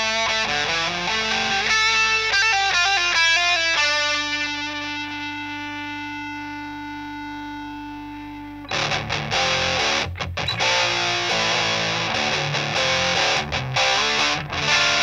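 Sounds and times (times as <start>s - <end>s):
distorted guitar riffing: 0.0s - 15.0s
electric guitar held note: 4.3s - 15.0s.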